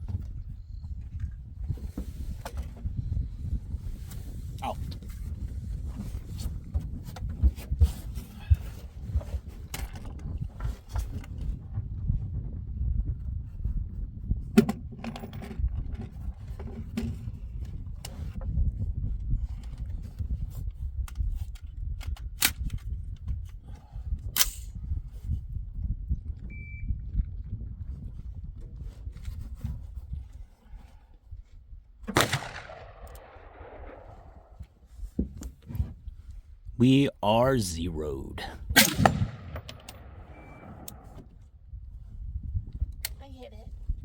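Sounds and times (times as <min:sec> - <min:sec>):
wind buffeting microphone: 0:00.0 - 0:10.6.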